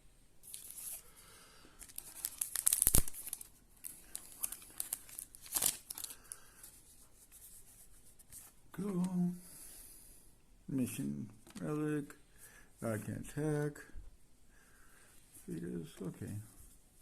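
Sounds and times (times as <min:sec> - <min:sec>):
wrapper crinkling and tearing: 0:00.4 - 0:01.1, 0:01.8 - 0:06.4.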